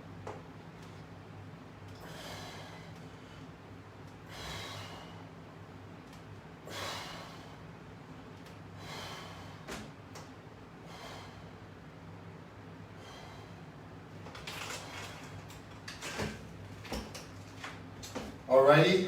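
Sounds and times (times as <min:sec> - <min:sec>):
low electrical hum: 0:00.0 - 0:19.0
man exhaling forcefully: 0:06.6 - 0:07.6.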